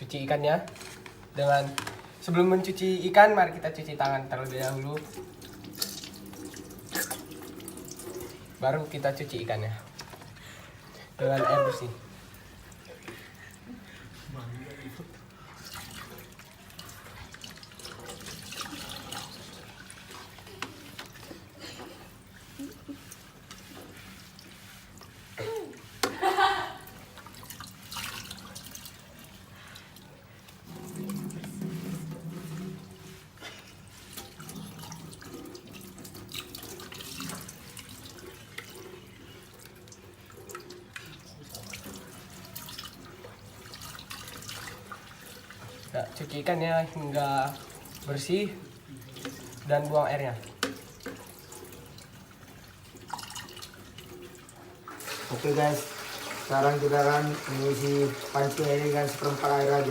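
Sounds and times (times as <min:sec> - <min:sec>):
water splashing and dripping: 0:03.5 - 0:10.4, 0:15.1 - 0:21.6, 0:22.2 - 0:59.9
small splashes and knocks: 0:48.9 - 0:54.7.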